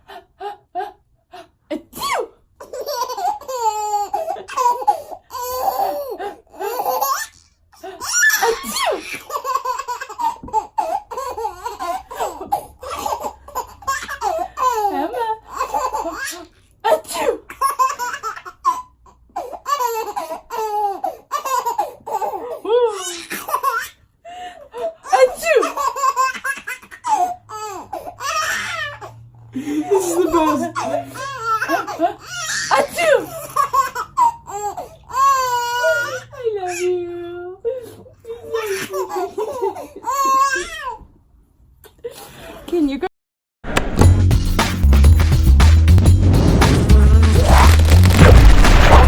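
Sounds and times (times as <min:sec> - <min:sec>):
baby laughing: 0:02.1 - 0:16.5.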